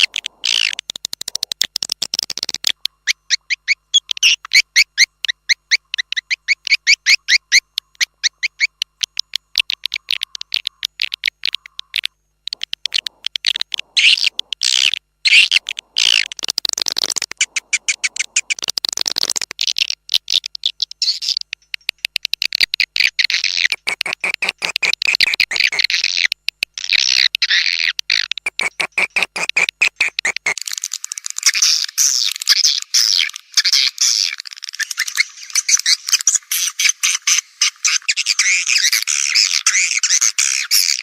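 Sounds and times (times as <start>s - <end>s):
swiftlet chirps and twittering: 2.4s - 19.4s, 27.4s - 30.6s.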